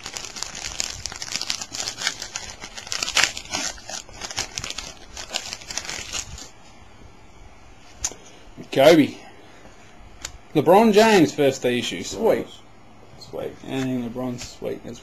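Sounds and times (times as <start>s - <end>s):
wrapper being torn and crinkled: 0.0s - 6.5s.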